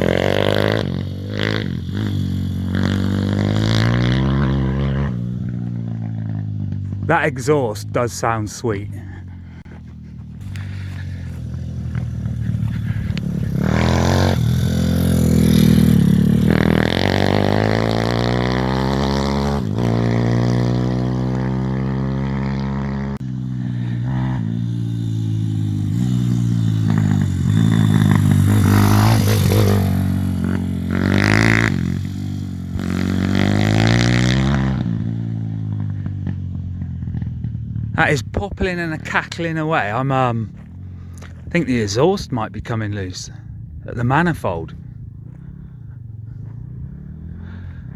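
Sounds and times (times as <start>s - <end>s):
exhaust popping and crackling: 0.0s - 24.8s, 25.4s - 47.9s
motorbike engine revving: 0.0s - 42.3s, 43.3s - 47.9s.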